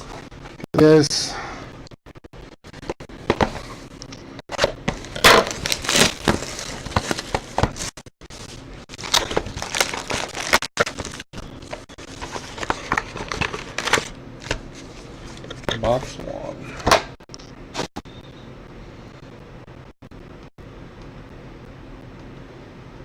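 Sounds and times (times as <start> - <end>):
plastic wrapping crinkling and tearing: 4.9 - 14.8.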